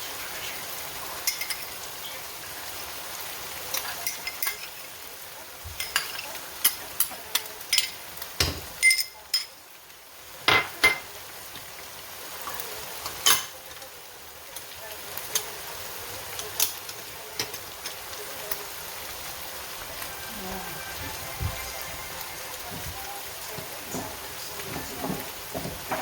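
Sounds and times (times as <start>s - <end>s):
food sizzling in a pan: 0.0s - 26.0s
spoon clinking against pan: 1.2s - 1.7s, 3.7s - 4.8s, 5.8s - 9.6s.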